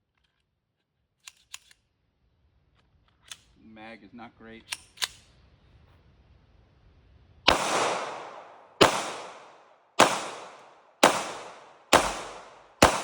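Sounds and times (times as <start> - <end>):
pistol shots with echoing tail: 7.5 - 13.0.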